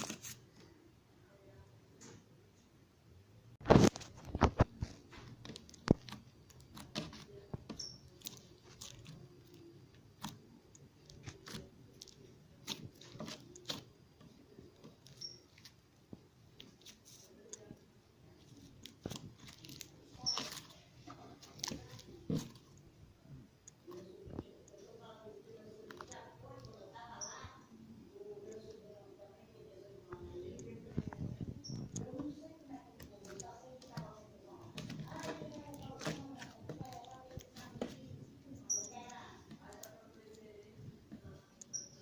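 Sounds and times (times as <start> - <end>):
slime squished by hand: 3.6 - 13.9
crackles and pops: 3.6 - 17.8.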